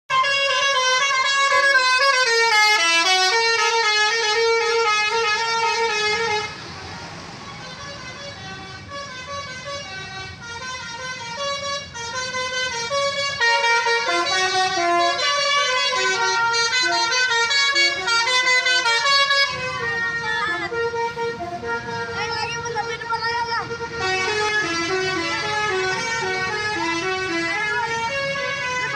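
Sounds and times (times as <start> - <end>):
musical air horn tune: 7.6 - 22.2.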